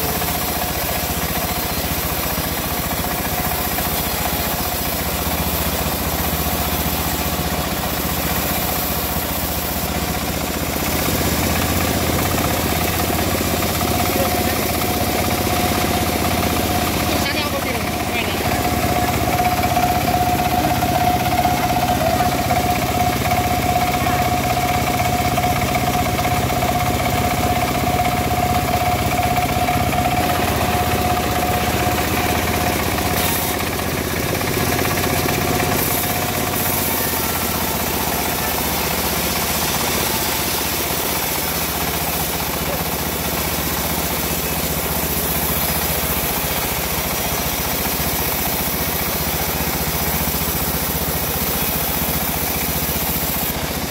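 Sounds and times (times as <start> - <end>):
saw engine running: 0.0 - 53.9
steady high tone: 11.6 - 43.0.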